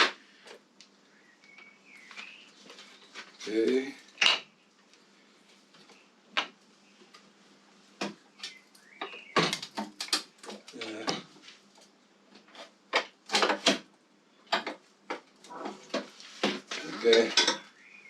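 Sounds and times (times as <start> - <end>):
metal tools clinking and knocking: 17.1 - 17.7.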